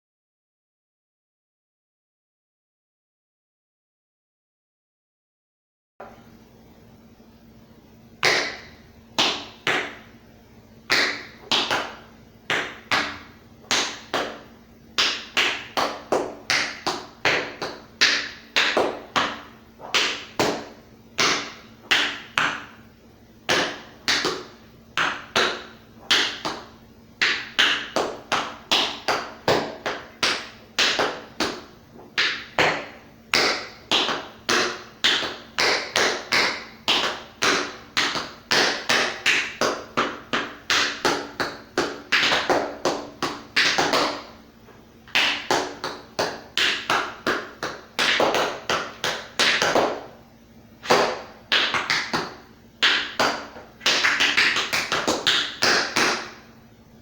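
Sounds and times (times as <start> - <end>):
tap shoes on hard floor: 10.9 - 22.8, 23.5 - 50.2, 50.8 - 56.4.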